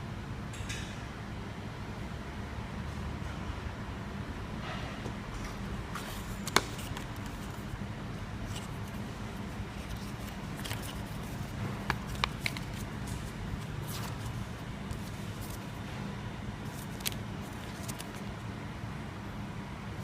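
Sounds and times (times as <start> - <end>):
steady low hum: 0.0 - 20.0
packaging rustling: 8.5 - 15.8, 16.6 - 18.4.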